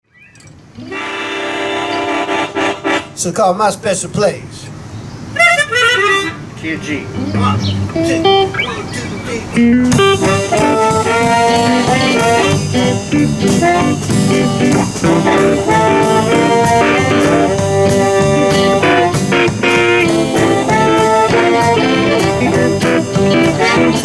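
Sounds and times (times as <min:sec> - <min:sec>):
electric guitar lines: 0:05.3 - 0:24.0
bass: 0:07.0 - 0:24.0
drums: 0:07.2 - 0:24.0.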